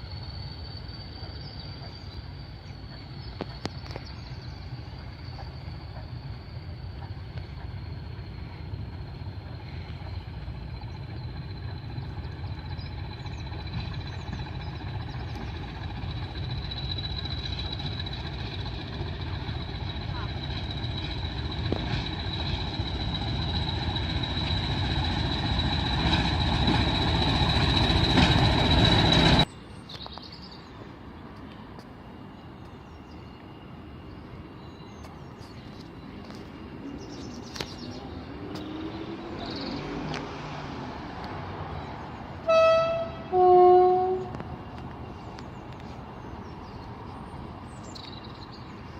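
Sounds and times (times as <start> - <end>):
train rumbling past: 0.0 - 48.9
high squeal: 3.8 - 29.5
train horn: 42.4 - 44.5.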